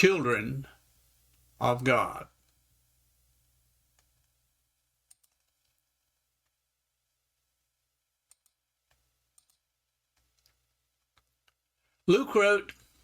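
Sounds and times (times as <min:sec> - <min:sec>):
faint sharp clicks: 0:08.3 - 0:09.6.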